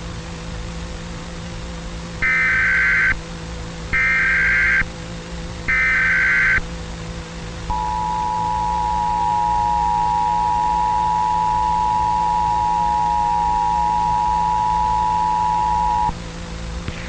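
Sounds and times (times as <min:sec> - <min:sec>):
steady hum and hiss: 0:00.0 - 0:17.0
two-tone alert signal: 0:07.7 - 0:16.1
warbling digital data tones: 0:07.7 - 0:16.1.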